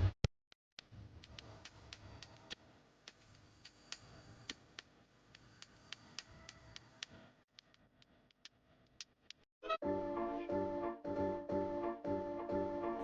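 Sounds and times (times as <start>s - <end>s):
small parts and tools clicking: 1.2s - 9.5s.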